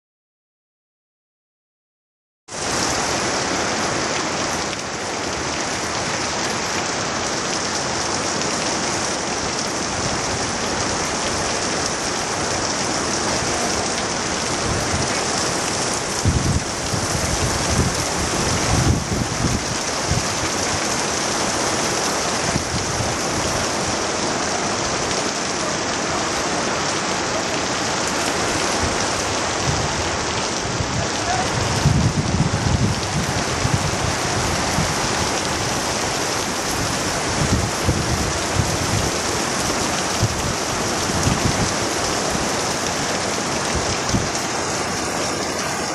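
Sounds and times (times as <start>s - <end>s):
heavy rain pouring: 2.5s - 45.9s
wind rumbling on microphone: 9.8s - 25.3s, 27.9s - 45.9s.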